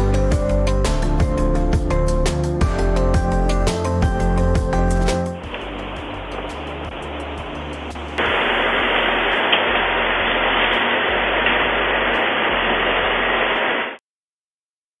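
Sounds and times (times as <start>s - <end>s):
static hiss: 5.2s - 14.0s
low hum: 5.4s - 14.0s.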